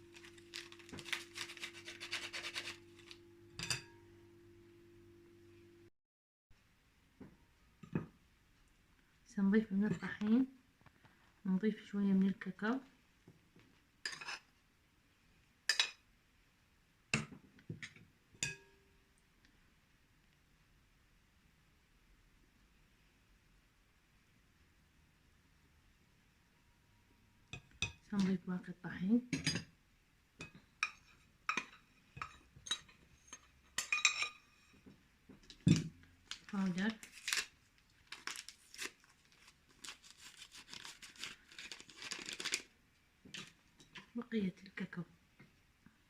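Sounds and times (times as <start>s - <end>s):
metal kitchenware clinking: 0.1s - 4.1s, 30.8s - 34.8s.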